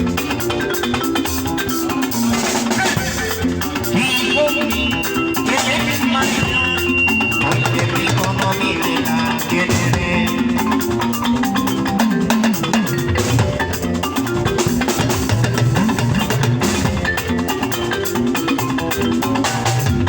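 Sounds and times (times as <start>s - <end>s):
drums and percussion: 0.0s - 20.0s
bass line: 2.6s - 13.8s.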